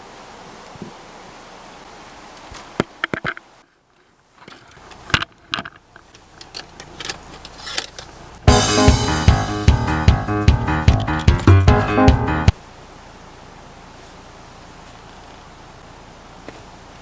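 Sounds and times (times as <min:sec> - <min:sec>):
handling rustles: 0:02.4 - 0:08.4
background music with a beat: 0:08.5 - 0:12.6.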